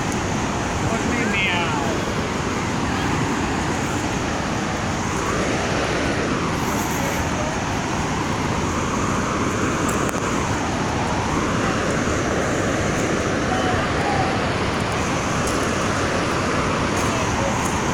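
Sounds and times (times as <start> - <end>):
floodwater rushing: 0.0 - 17.9.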